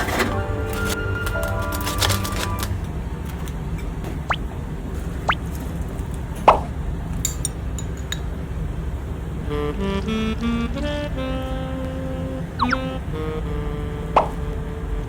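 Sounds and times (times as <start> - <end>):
steady low hum: 8.4 - 15.0.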